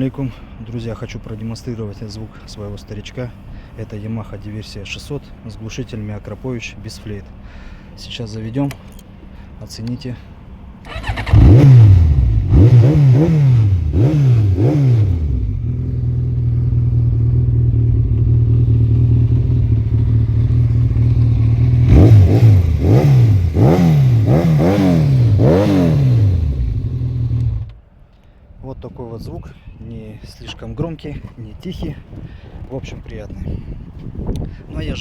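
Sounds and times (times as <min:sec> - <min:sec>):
motorcycle engine revving and idling: 0:10.8 - 0:27.8.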